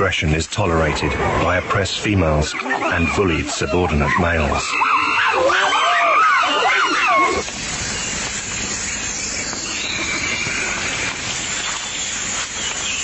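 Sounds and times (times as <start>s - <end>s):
steady hissing: 6.8s - 13.0s.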